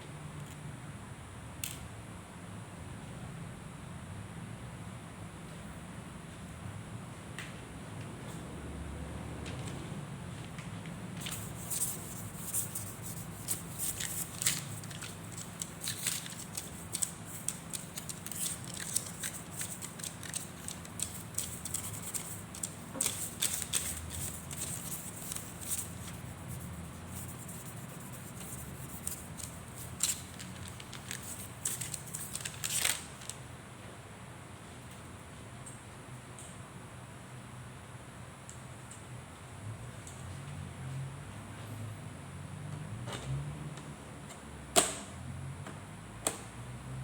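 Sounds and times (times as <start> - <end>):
steady low hum: 10.9 - 33.6.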